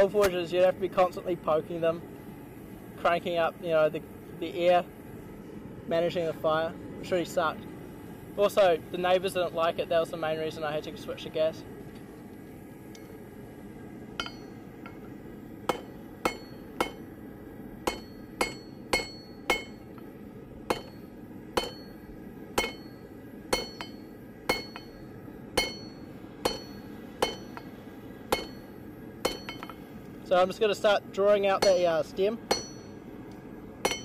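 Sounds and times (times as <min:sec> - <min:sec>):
hammer striking steel on anvil: 0:14.2 - 0:15.0, 0:15.7 - 0:17.1, 0:17.8 - 0:20.0, 0:20.7 - 0:25.0, 0:25.6 - 0:29.8, 0:31.6 - 0:33.0.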